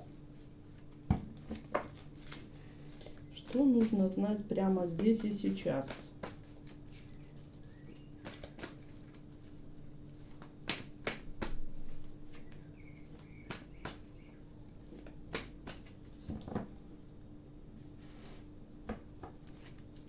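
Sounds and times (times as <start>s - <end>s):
faint steady hum: 0.0s - 20.0s
cards being shuffled: 0.7s - 7.5s, 8.2s - 14.2s, 19.2s - 20.0s.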